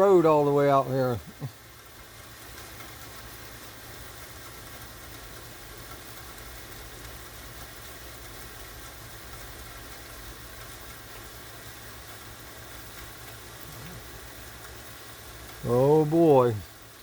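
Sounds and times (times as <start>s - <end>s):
light rain hissing: 0.0s - 17.0s
constant low rumble: 8.8s - 16.7s.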